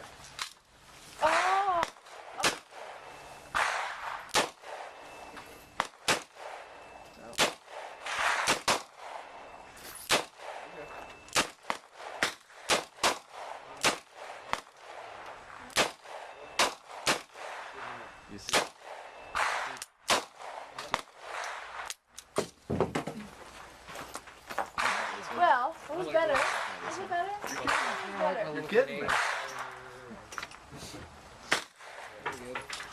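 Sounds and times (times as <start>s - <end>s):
handgun shots: 1.3s - 5.0s, 5.8s - 9.3s, 10.0s - 10.7s, 11.3s - 15.0s, 15.7s - 17.9s, 18.5s - 22.5s, 24.8s - 25.4s, 26.3s - 28.3s, 29.0s - 29.7s.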